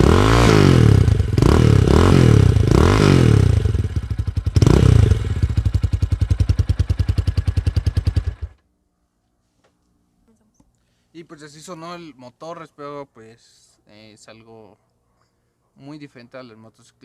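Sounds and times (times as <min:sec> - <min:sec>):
motorcycle engine revving and idling: 0:00.0 - 0:08.6.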